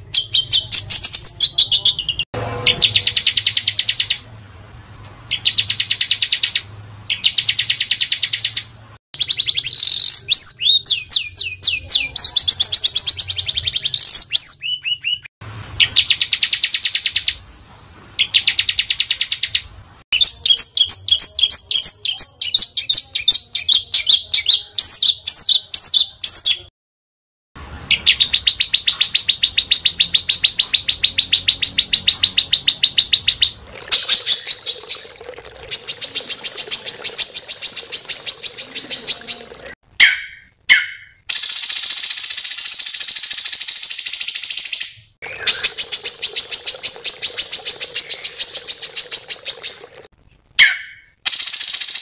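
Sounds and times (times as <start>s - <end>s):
songbirds chipping and trilling: 5.3s - 17.4s, 27.8s - 52.0s.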